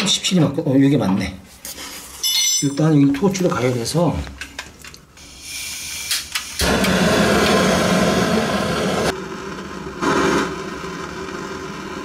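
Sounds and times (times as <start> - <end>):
gas torch roaring: 5.2 - 12.0.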